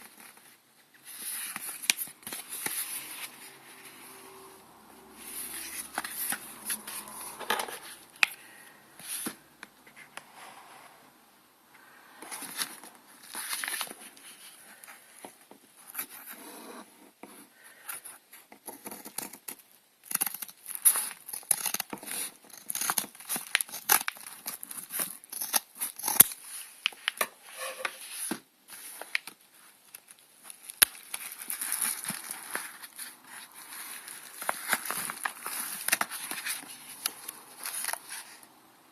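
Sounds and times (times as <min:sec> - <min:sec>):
plastic packaging crinkling: 0:29.0 - 0:38.5
packaging tearing: 0:30.5 - 0:38.3.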